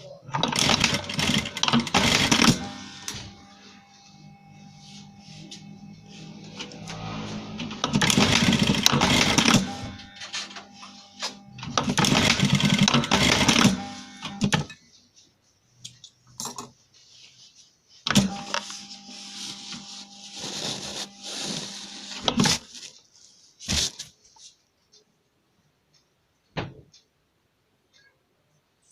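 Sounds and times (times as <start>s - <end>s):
sewing machine stitching: 0.4s - 3.4s, 6.6s - 10.6s, 11.2s - 14.7s.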